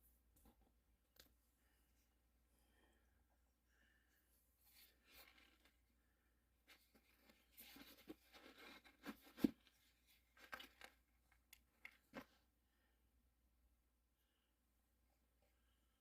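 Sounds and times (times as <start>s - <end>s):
handling clicks and rustling: 6.7s - 12.4s.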